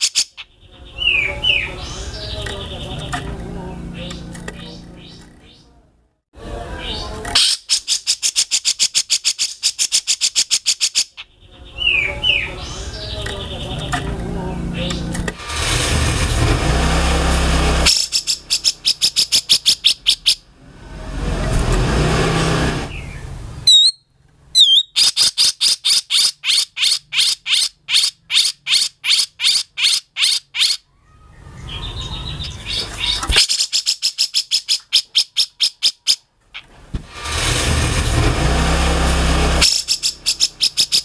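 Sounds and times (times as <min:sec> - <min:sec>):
bird singing harsh rattling song: 0:00.0 - 0:05.7, 0:06.8 - 0:15.8, 0:17.8 - 0:20.5, 0:22.8 - 0:36.7, 0:39.6 - 0:41.0.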